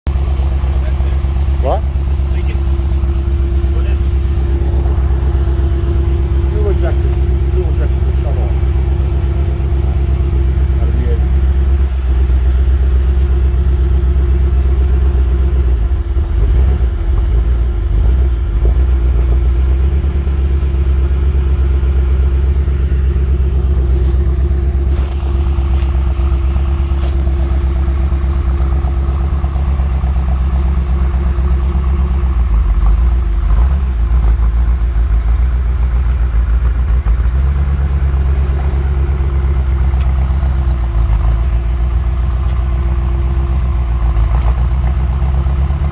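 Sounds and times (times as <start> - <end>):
car engine idling rough: 0.0 - 45.9.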